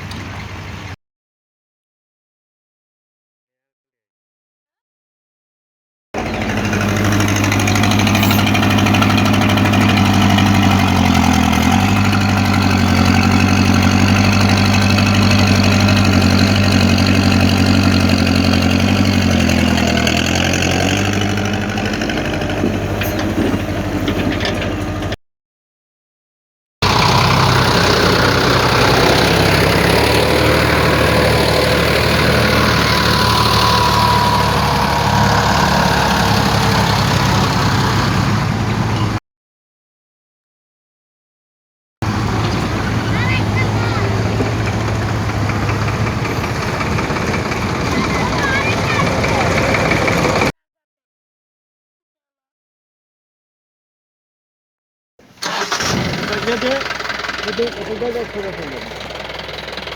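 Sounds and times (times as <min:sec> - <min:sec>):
engine idling: 0:06.2 - 0:25.2, 0:26.8 - 0:39.2, 0:42.0 - 0:50.5, 0:55.4 - 0:59.9
steady engine sound: 0:06.2 - 0:25.2, 0:26.8 - 0:39.2, 0:42.0 - 0:50.5, 0:55.4 - 0:59.9.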